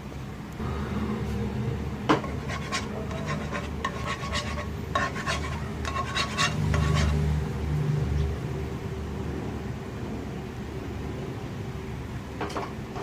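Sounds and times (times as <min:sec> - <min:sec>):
steady low hum: 0:00.0 - 0:12.3
utensil scraping metal pan: 0:02.1 - 0:07.2.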